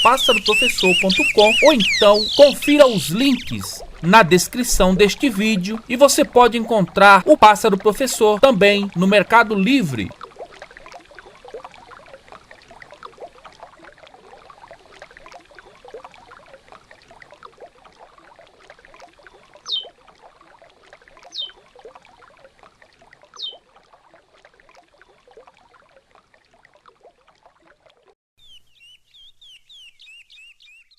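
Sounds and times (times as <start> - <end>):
falling whistled bird notes: 0.0 - 3.6
bird warbling song: 0.0 - 3.9, 9.3 - 10.1, 19.6 - 19.9, 21.2 - 21.6, 23.4 - 23.6, 28.4 - 30.9
river water babbling: 0.0 - 28.1.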